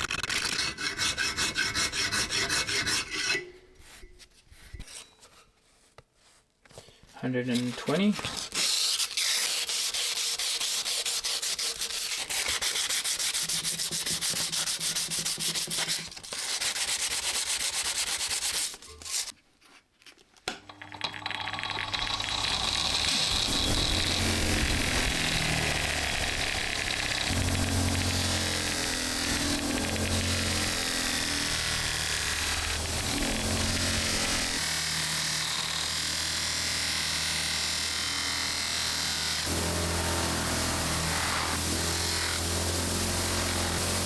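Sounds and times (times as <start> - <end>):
hand sanding strokes: 0.4 - 4.0, 8.8 - 19.3
electric power tool humming: 21.0 - 44.0.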